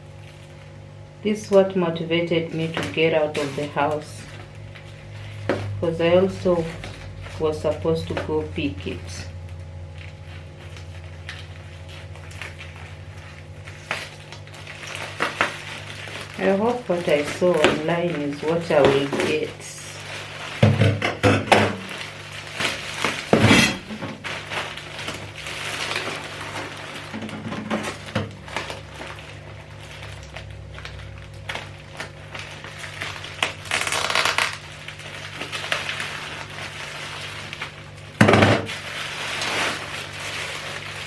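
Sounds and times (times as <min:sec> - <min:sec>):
plastic packaging rustling: 0:00.0 - 0:01.0, 0:02.2 - 0:41.0.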